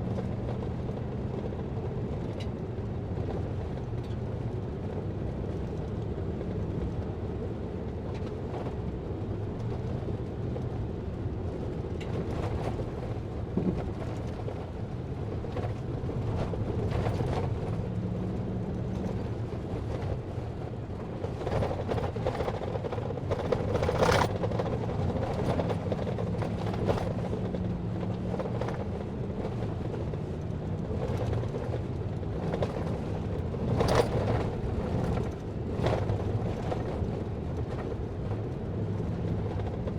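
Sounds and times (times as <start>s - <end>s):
vehicle engine running: 11.2s - 39.9s.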